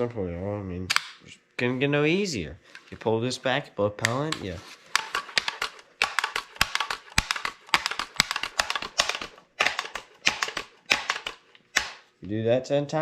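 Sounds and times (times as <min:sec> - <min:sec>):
air rifle bolt and pump clicks: 0:04.0 - 0:12.0.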